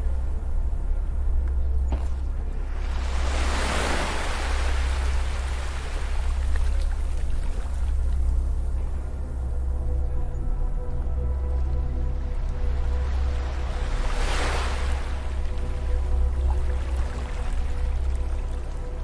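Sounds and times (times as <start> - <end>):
soft background music: 0.0 - 19.0
surf washing onto shore: 2.8 - 6.6.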